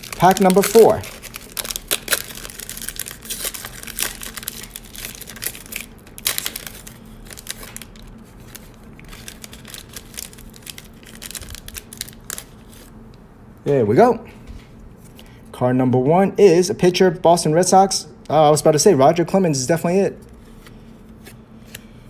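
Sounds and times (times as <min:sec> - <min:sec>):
card pack wrapper crinkling: 0:00.0 - 0:12.9.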